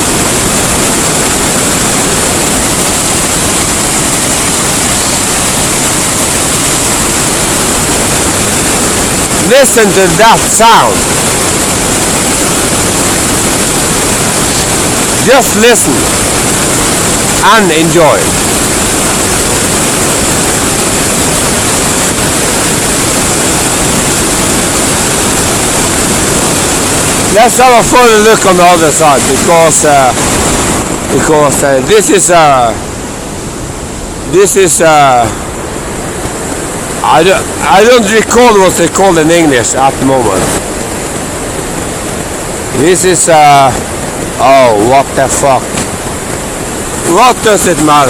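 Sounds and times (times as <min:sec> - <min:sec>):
waterfall rushing: 0:00.0 - 0:48.0.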